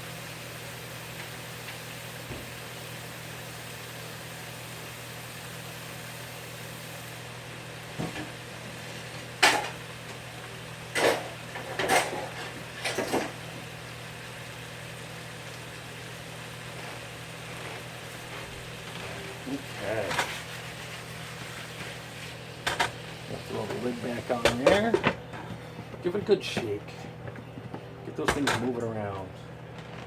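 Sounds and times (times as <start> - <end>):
steady low hum: 7.4 - 30.0
cookware clanks and knocks: 9.4 - 9.8, 11.0 - 13.4.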